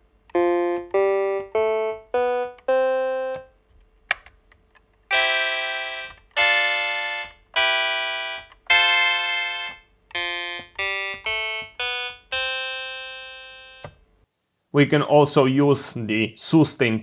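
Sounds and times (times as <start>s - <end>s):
electronic keyboard notes: 0.3s - 3.6s, 5.1s - 14.0s.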